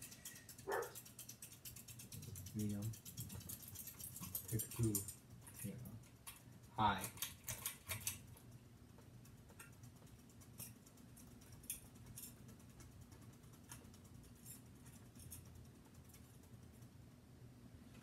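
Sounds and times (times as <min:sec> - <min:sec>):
light clicks and ticks: 0:00.0 - 0:17.0
ceiling fan motor hum: 0:00.0 - 0:18.0.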